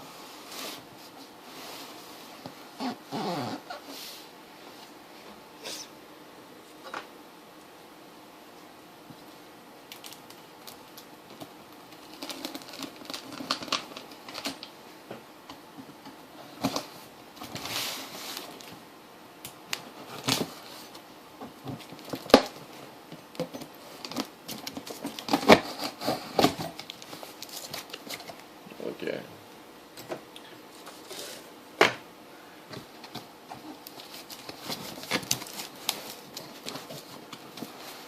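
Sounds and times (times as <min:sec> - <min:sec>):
packaging rustle: 0:09.9 - 0:14.7, 0:21.6 - 0:28.4, 0:33.0 - 0:38.0.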